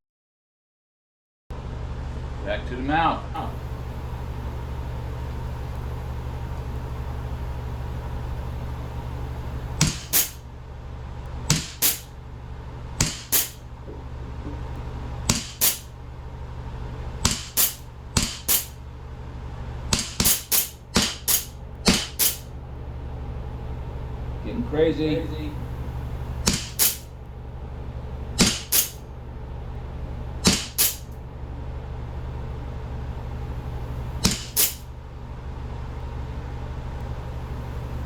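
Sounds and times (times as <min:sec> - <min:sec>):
air pistol shots: 0:09.8 - 0:10.5, 0:11.5 - 0:12.2, 0:13.0 - 0:13.7, 0:15.3 - 0:16.0, 0:17.2 - 0:18.8, 0:19.9 - 0:22.5, 0:26.4 - 0:27.2, 0:28.4 - 0:29.1, 0:30.4 - 0:31.2, 0:34.2 - 0:34.9.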